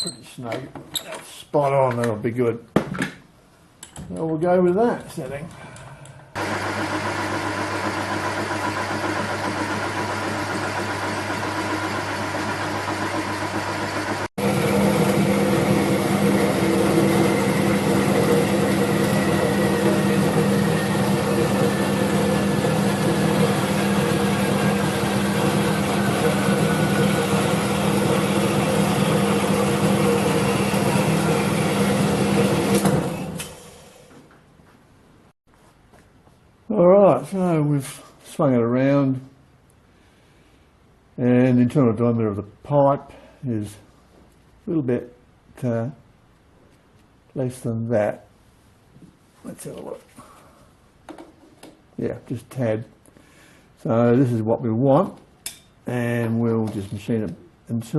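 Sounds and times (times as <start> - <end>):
metal lathe humming: 6.4 - 33.6.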